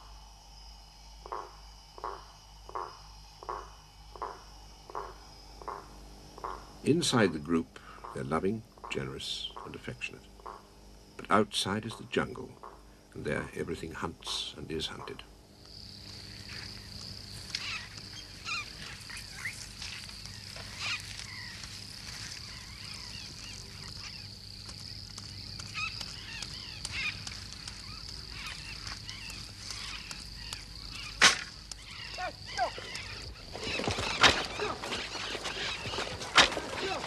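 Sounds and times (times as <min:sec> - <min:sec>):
high insect drone: 0:00.0 - 0:37.0
rustling and crackling: 0:16.0 - 0:37.0
birds chirping and whistling: 0:17.6 - 0:21.7, 0:25.6 - 0:36.9
sharp crack: 0:29.7 - 0:32.3, 0:33.7 - 0:37.0.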